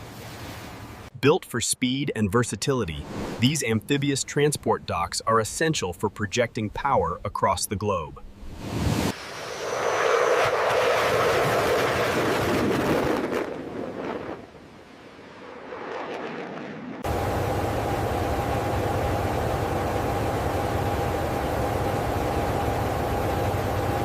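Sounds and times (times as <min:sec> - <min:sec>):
loud rushing noise: 0:08.5 - 0:13.8
constant whining tone: 0:17.0 - 0:24.0
machinery hum with low drone: 0:17.0 - 0:24.0.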